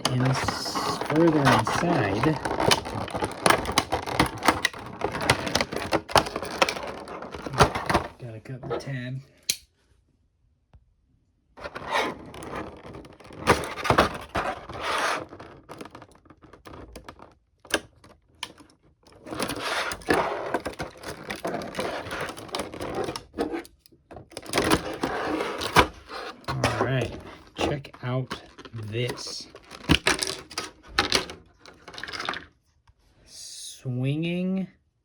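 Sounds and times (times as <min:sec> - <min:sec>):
plastic packaging crinkling: 0:00.0 - 0:08.2.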